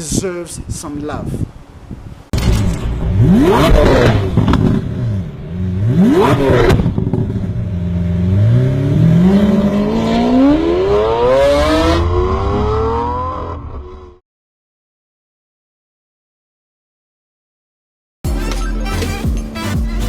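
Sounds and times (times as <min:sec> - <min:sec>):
exhaust crackling pops: 0:02.3 - 0:07.6
car engine revving: 0:02.4 - 0:14.2.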